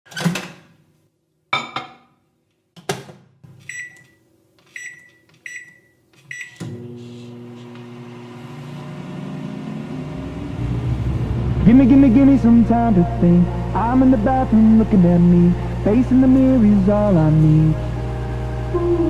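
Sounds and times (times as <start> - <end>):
keypad beeps: 3.6 - 6.6
microwave oven humming: 6.6 - 19.0.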